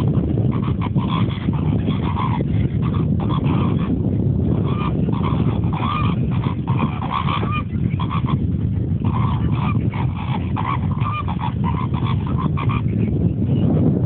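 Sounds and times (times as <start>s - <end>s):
flamingos honking: 0.0s - 13.1s
low rumble: 0.0s - 14.0s.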